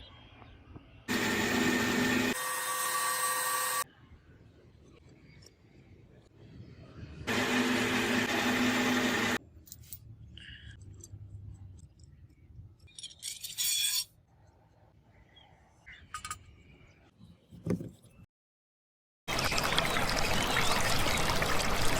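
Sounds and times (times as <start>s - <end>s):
power tool whirring: 1.1s - 3.8s, 7.3s - 9.4s.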